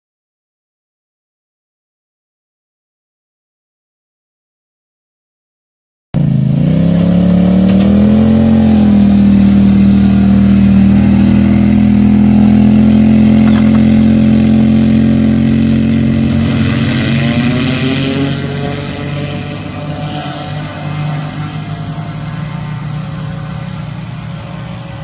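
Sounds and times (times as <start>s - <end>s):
cart engine revving: 6.2s - 25.0s.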